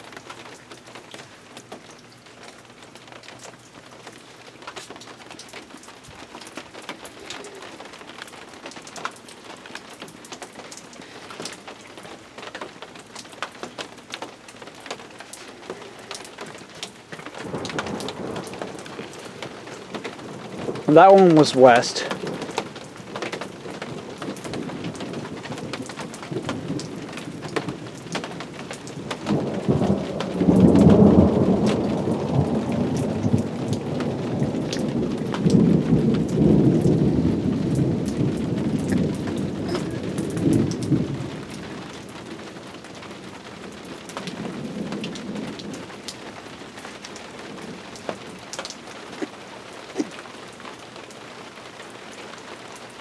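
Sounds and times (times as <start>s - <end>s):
raindrops ticking: 0.0s - 53.0s
steady rain falling: 0.0s - 53.0s
thunder rolling: 17.4s - 41.8s.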